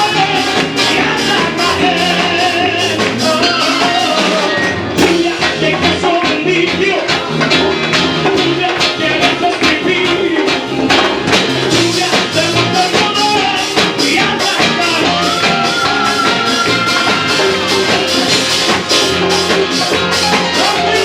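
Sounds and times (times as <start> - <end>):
lively praise music: 0.0 - 21.0
percussive beat: 5.0 - 21.0.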